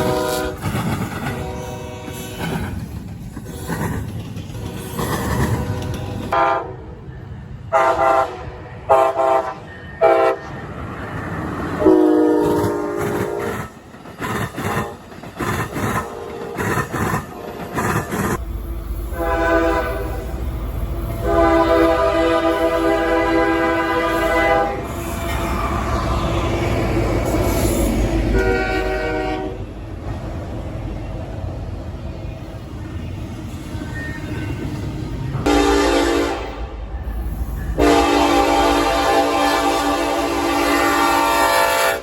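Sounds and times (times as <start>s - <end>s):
locomotive air horn blasts: 0.0s - 0.6s, 1.3s - 2.4s, 5.6s - 7.0s, 7.7s - 10.5s, 11.8s - 13.6s, 19.1s - 20.4s, 21.2s - 26.5s, 28.3s - 29.7s, 35.4s - 36.8s, 37.8s - 42.0s
train rumble: 0.0s - 42.0s.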